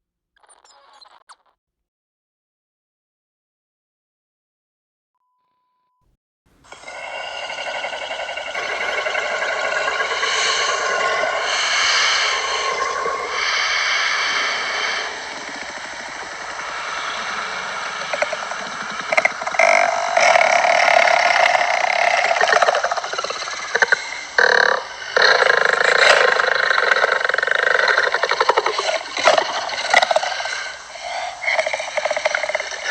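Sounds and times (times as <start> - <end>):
raspy throaty creature noise: 6.7 - 32.9.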